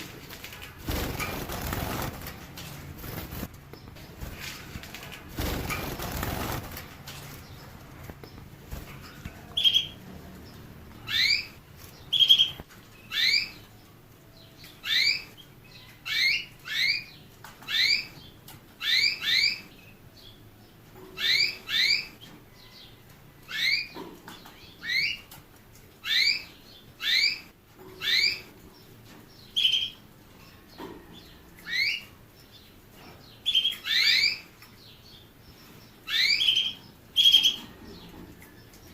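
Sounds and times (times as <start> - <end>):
finch chirping: 3.0 - 13.7, 26.0 - 38.9.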